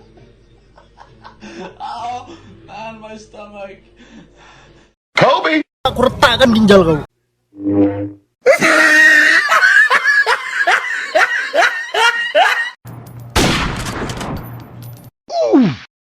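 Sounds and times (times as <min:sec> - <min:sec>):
cry falling in pitch: 0:08.4 - 0:09.7
squealing laugh: 0:08.5 - 0:12.8.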